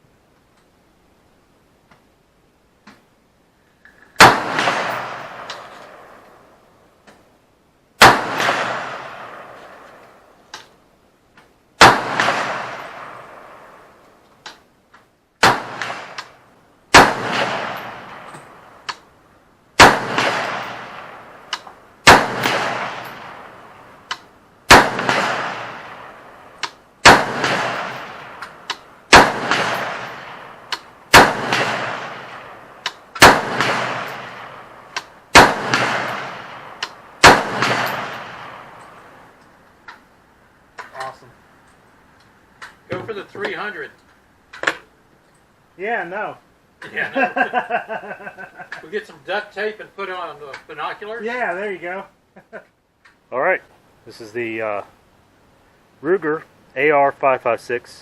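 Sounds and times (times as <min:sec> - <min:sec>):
faint gunshots: 0:04.2 - 0:06.2, 0:08.0 - 0:09.8, 0:11.8 - 0:13.7, 0:15.4 - 0:18.6, 0:19.8 - 0:21.3, 0:22.0 - 0:23.6, 0:24.7 - 0:26.2, 0:27.0 - 0:38.8
loud gunshots echoing: 0:04.2 - 0:06.2, 0:08.0 - 0:09.8, 0:11.8 - 0:13.7, 0:15.4 - 0:16.2, 0:16.9 - 0:18.7, 0:19.8 - 0:21.4, 0:22.0 - 0:23.9, 0:24.7 - 0:28.4, 0:29.1 - 0:38.8.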